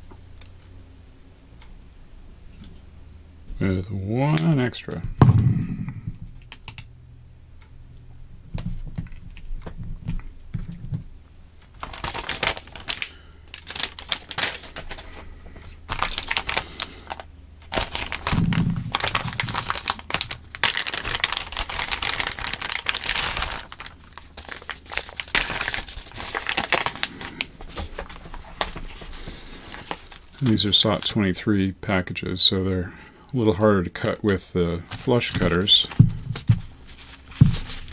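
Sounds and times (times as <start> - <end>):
small irregular clicks: 0.0 - 0.8, 5.8 - 7.0
plastic tape crinkling on paper: 11.6 - 31.4, 34.0 - 37.9.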